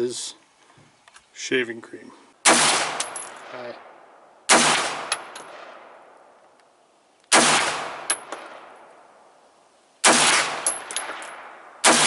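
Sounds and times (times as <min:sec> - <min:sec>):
gunshot ringing out: 0:02.4 - 0:06.0, 0:07.3 - 0:08.9, 0:10.0 - 0:12.0.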